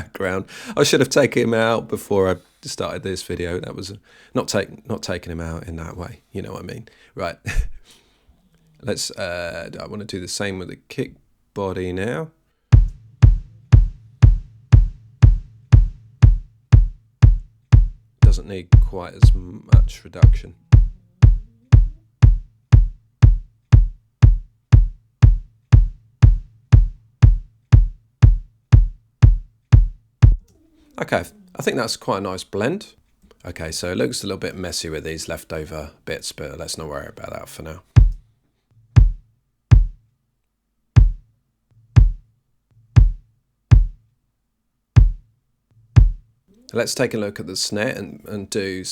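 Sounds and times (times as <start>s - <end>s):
kick drum thuds: 12.7s - 30.5s, 37.9s - 38.2s, 38.8s - 40.0s, 41.0s - 44.0s, 45.0s - 46.3s.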